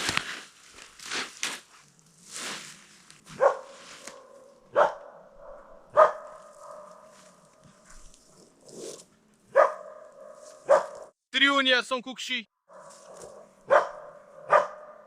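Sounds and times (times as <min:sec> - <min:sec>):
rustling: 0:00.0 - 0:04.6, 0:06.2 - 0:09.4
dog barking: 0:03.3 - 0:07.3, 0:09.5 - 0:11.1, 0:12.7 - 0:15.0.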